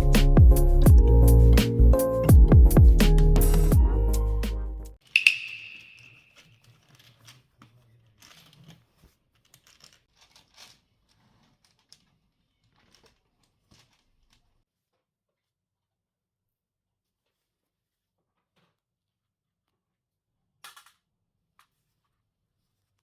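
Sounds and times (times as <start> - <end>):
background music: 0.0 - 5.5
small objects clicking and rustling: 5.0 - 14.6
sharp clink: 5.1 - 6.4.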